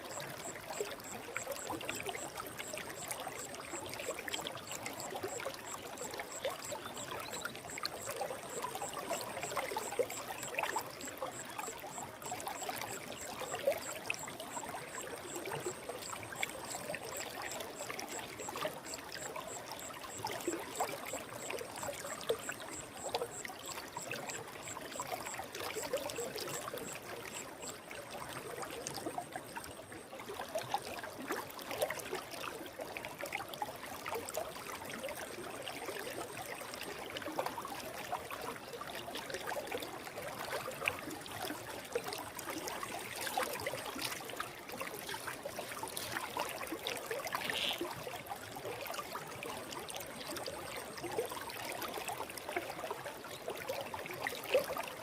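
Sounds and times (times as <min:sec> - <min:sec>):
stream babbling: 0:00.0 - 0:55.0.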